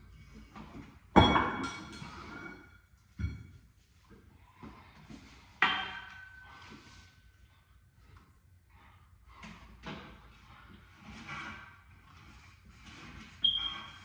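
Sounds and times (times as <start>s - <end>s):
metal gym weights clanking: 5.6s - 6.5s.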